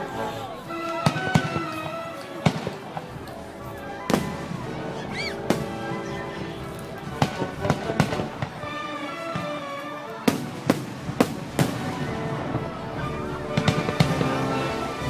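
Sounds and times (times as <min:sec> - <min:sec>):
music playing: 0:00.0 - 0:15.0
fireworks bangs: 0:00.9 - 0:03.3, 0:04.1 - 0:06.2, 0:07.0 - 0:08.7, 0:10.2 - 0:12.7, 0:13.6 - 0:14.8.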